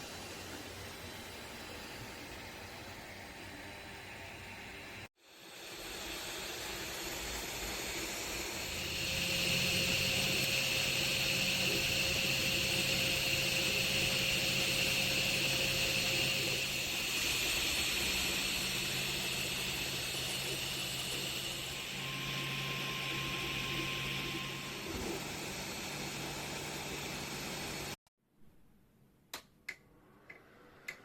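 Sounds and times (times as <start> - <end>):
cooling fans whirring: 0.0 - 28.0
high motor whine: 5.3 - 28.0.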